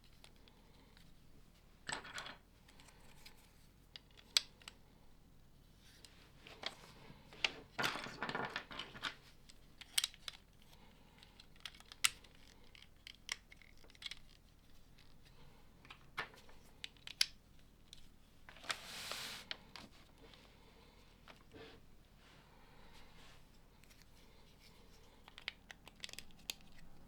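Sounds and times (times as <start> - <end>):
plastic pieces clicking: 9.8 - 10.5, 11.2 - 15.2, 25.2 - 27.0
rustling: 18.5 - 27.0.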